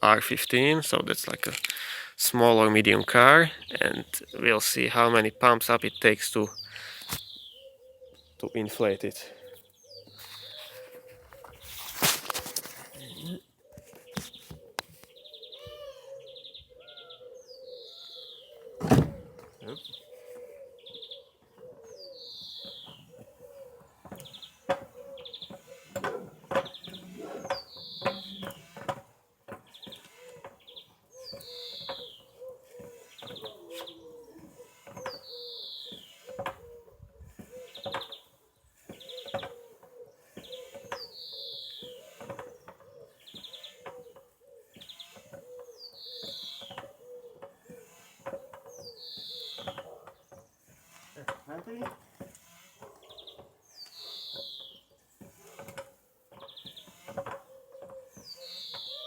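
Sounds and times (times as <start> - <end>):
foot pump strokes: 22.6 - 59.0.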